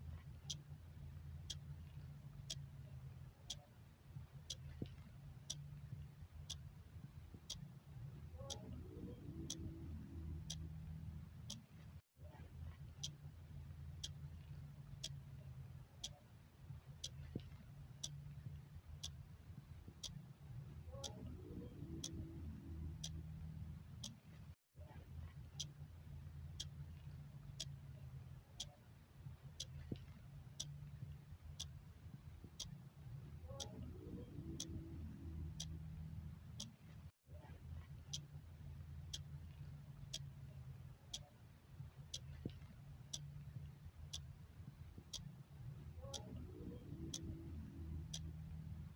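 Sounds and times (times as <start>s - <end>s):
low background hum: 0.0s - 48.9s
clock ticking: 4.5s - 5.7s, 8.4s - 10.8s, 21.0s - 23.2s, 33.5s - 36.0s, 45.0s - 45.3s, 46.0s - 48.3s.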